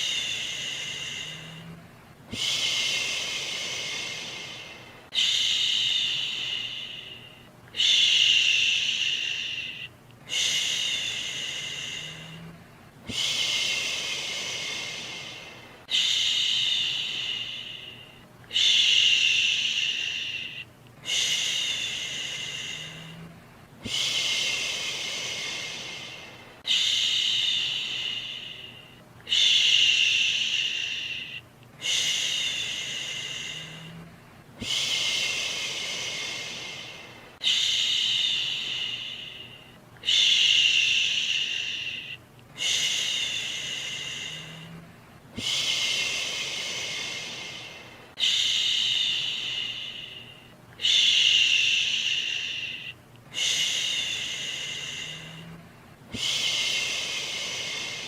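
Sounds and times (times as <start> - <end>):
person shushing: 0.0 - 58.0.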